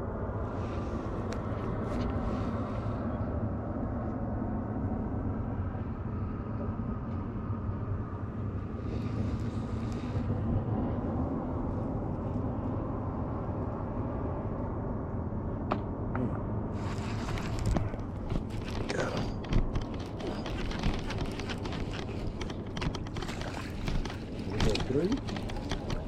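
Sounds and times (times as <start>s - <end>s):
boat motor humming: 16.8s - 26.0s.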